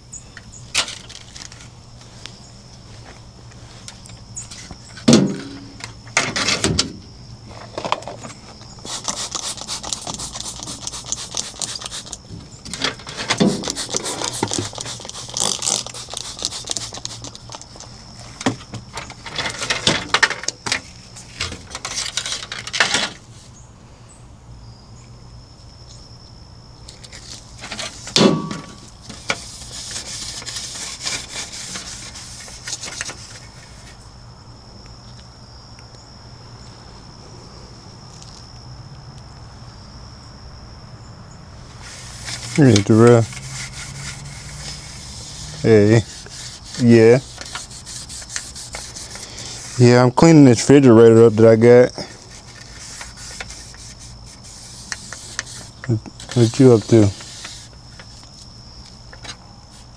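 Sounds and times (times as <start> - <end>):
high insect trill: 0.0 - 59.9
rubbing strokes on refrigerator: 8.8 - 12.3, 13.1 - 18.4, 27.6 - 34.0, 41.7 - 50.1, 52.2 - 58.2
sharp knocks: 28.2 - 28.9.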